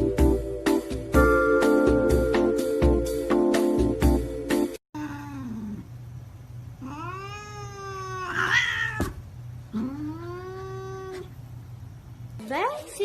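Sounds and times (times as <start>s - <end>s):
cat yowling: 5.0s - 5.9s, 6.8s - 11.4s.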